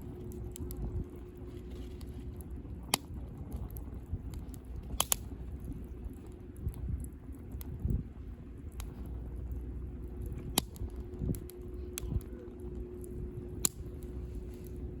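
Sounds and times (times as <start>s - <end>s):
campfire crackling: 0.0s - 15.0s
low rumble of burning fire: 0.0s - 15.0s
sharp pop of fire: 4.9s - 5.3s, 10.5s - 11.4s.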